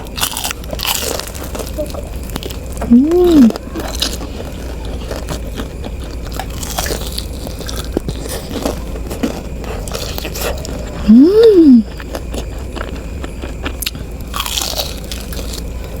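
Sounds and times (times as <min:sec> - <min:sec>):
chewing with crunches: 0:00.0 - 0:16.0
person humming: 0:02.9 - 0:03.6, 0:11.1 - 0:11.8.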